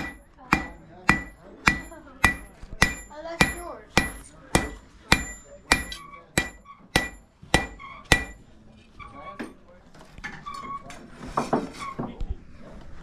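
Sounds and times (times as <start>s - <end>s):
hammer striking iron on anvil: 0.0s - 8.5s.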